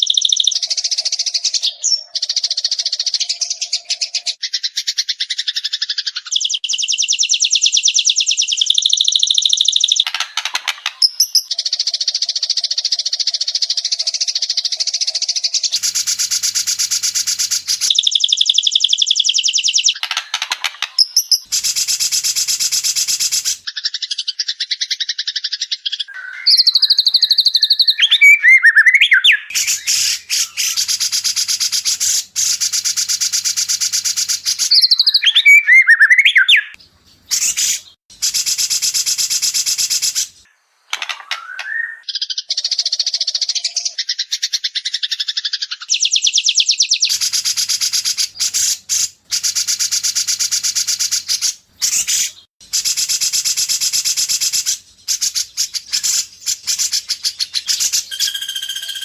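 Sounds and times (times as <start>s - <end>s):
bird whistling song: 0.0s - 20.2s, 20.8s - 40.5s, 41.1s - 59.0s.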